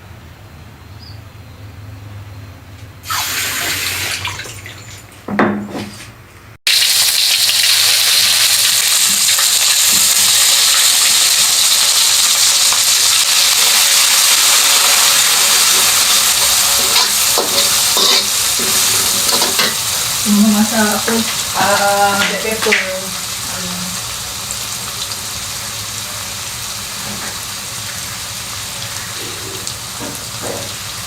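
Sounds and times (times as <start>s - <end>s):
food sizzling in hot oil: 3.0s - 4.2s, 6.7s - 31.0s.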